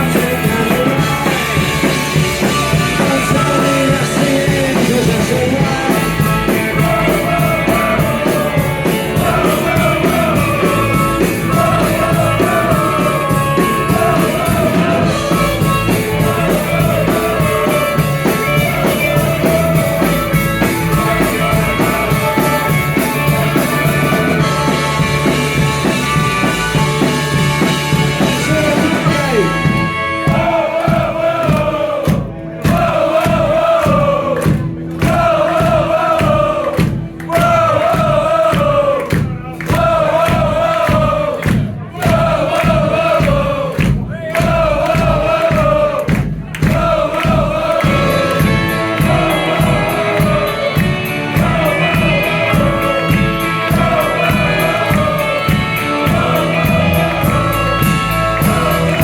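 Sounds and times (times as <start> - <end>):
person singing: 0.0 - 27.0
live rock band playing: 0.0 - 59.0.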